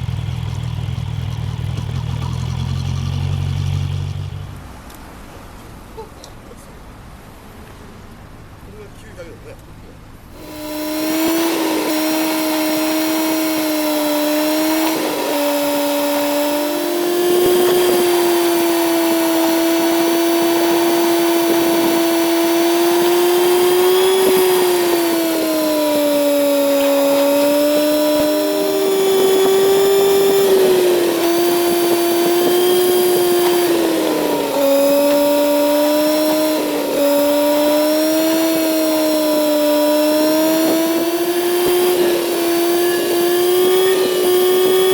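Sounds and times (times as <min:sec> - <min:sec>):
motorcycle engine whining: 0:00.0 - 0:05.9, 0:10.1 - 0:44.9.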